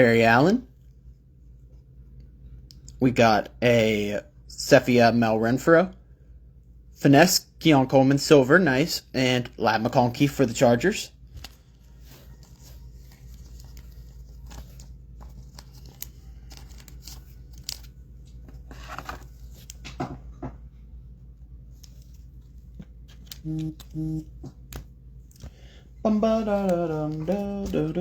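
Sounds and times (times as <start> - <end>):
card wrappers crinkling: 11.2 - 20.0, 21.7 - 28.0.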